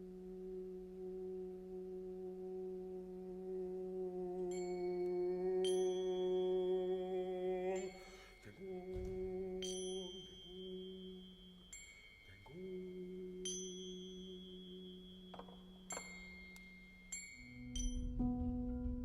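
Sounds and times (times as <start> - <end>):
struck bell-like tones: 4.2 - 19.0
sustained low hum: 17.6 - 19.0.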